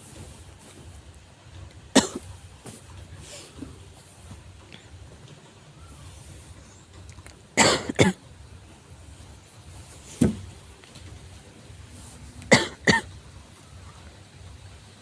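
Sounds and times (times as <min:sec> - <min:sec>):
severe cough: 0:01.9 - 0:02.3, 0:07.6 - 0:08.2, 0:12.5 - 0:13.1.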